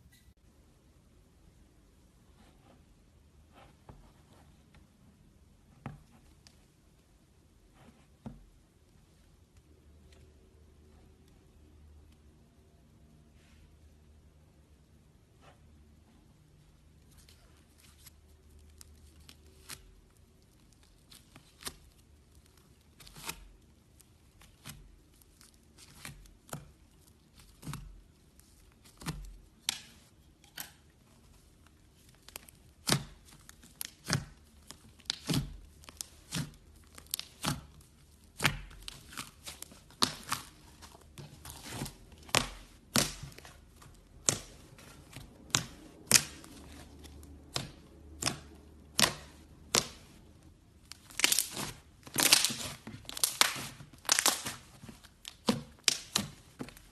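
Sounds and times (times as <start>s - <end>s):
slime crackling and popping: 18.4s - 31.0s, 31.9s - 56.9s.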